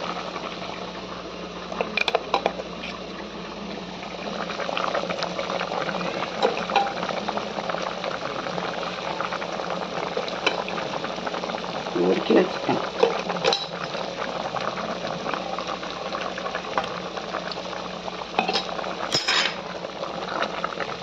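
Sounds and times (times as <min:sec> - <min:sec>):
curry bubbling in a pot: 0:00.0 - 0:21.0.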